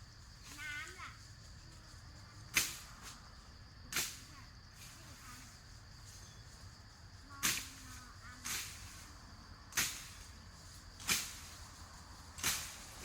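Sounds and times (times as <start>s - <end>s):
sharp swishing strokes: 11.0s - 13.0s.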